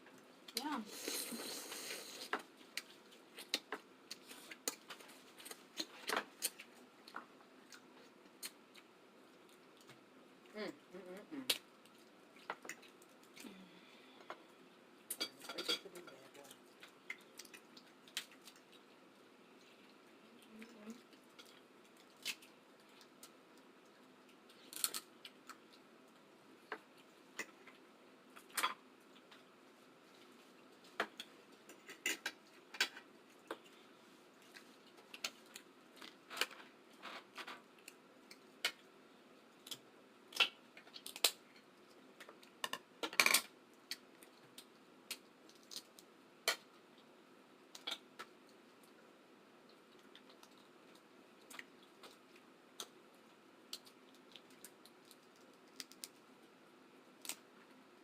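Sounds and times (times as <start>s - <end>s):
chewing and mouth sounds: 16.4s - 26.2s, 49.6s - 56.3s.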